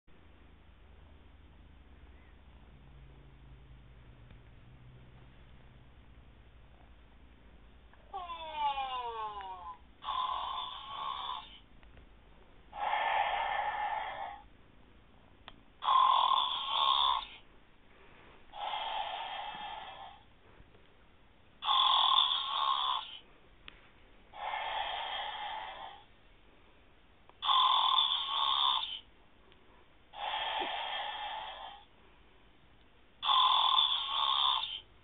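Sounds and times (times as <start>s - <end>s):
person snoring: 8.1s - 11.6s, 12.7s - 14.5s, 15.8s - 17.4s, 18.5s - 20.3s, 21.6s - 23.2s, 24.3s - 26.1s, 27.4s - 29.1s, 30.1s - 31.9s, 33.2s - 34.8s.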